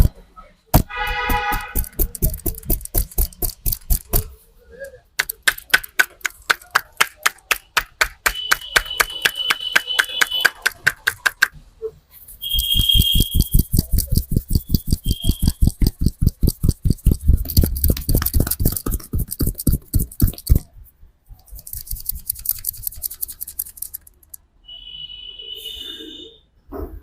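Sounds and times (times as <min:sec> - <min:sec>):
rapid hand strikes on head: 0:00.8 - 0:04.3, 0:12.6 - 0:20.7
hands rubbing rustle: 0:01.2 - 0:04.3, 0:12.2 - 0:20.8, 0:21.4 - 0:24.3.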